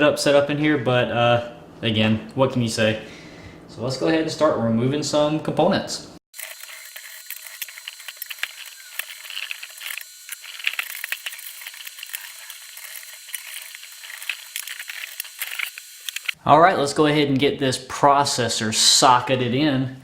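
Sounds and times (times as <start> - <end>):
computer parts clicking and rattling: 6.4 - 16.4.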